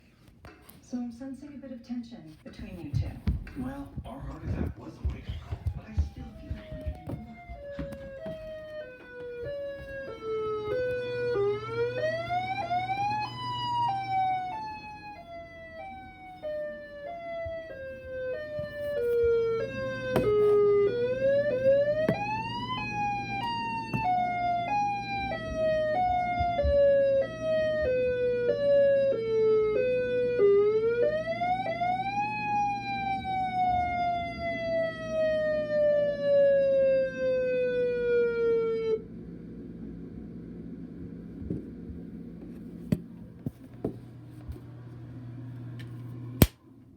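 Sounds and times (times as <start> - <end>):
tornado siren wailing: 5.2 - 39.2.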